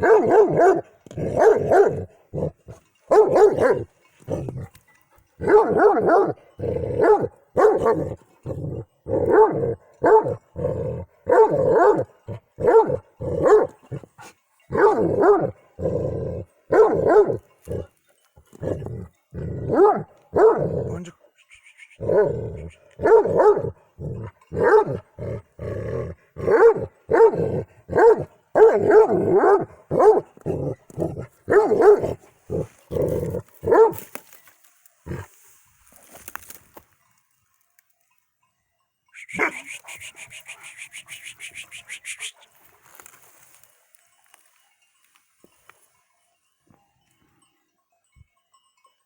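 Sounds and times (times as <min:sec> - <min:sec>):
dog barking: 0:00.0 - 0:02.2, 0:03.1 - 0:03.9, 0:05.4 - 0:06.4, 0:07.0 - 0:08.2, 0:09.2 - 0:10.4, 0:11.3 - 0:13.8, 0:14.7 - 0:15.6, 0:16.7 - 0:17.4, 0:19.7 - 0:20.7, 0:22.0 - 0:23.8, 0:24.6 - 0:25.0, 0:26.4 - 0:30.7, 0:31.5 - 0:34.1, 0:39.2 - 0:42.5
high fluttering call: 0:21.4 - 0:22.9, 0:39.2 - 0:42.8.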